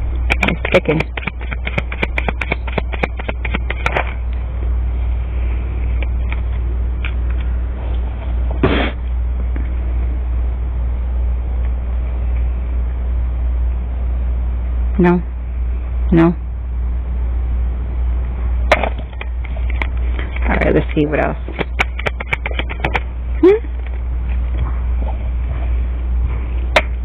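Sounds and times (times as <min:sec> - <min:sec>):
steady low hum: 0:00.0 - 0:27.0
cards being shuffled: 0:00.3 - 0:04.2.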